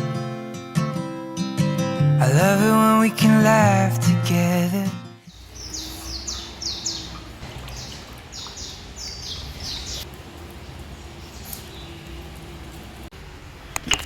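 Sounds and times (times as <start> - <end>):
bird chirping: 5.3 - 13.1.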